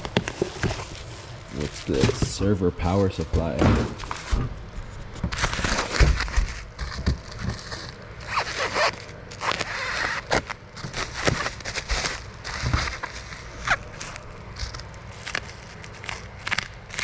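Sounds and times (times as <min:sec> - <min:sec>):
packaging crinkling: 0:05.1 - 0:17.0.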